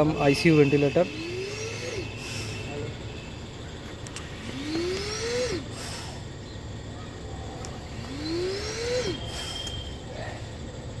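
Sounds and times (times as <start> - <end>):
steady low hum: 0.0 - 11.0
turbine blower whine rising: 1.0 - 2.7, 4.0 - 6.4, 7.8 - 10.0.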